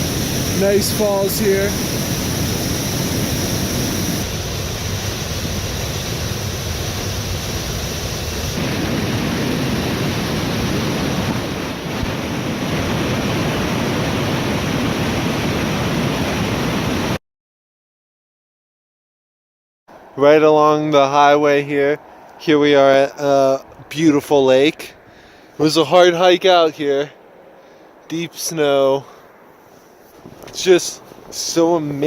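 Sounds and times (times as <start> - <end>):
waterfall rushing: 0.0 - 17.0.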